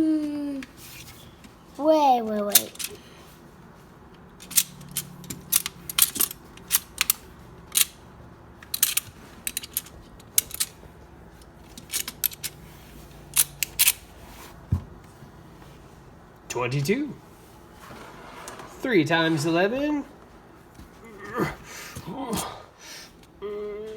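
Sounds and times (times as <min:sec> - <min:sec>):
plastic toy blocks clacking: 0:02.5 - 0:03.0, 0:04.4 - 0:08.0, 0:08.7 - 0:10.7, 0:11.8 - 0:12.6.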